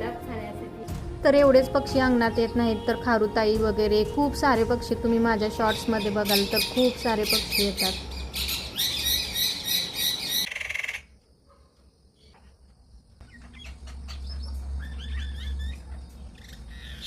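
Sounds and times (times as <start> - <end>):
scattered faint bird chirps: 6.0 - 17.0.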